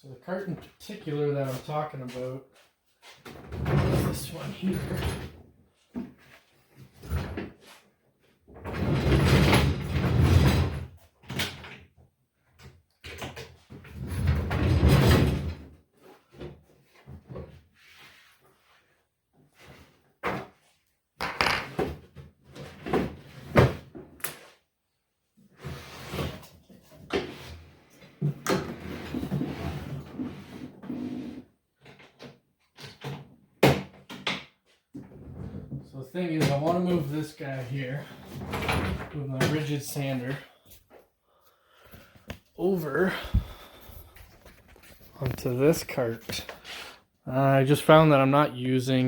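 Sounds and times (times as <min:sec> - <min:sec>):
wooden knocks and clunks: 0:21.2 - 0:21.9, 0:43.1 - 0:46.5.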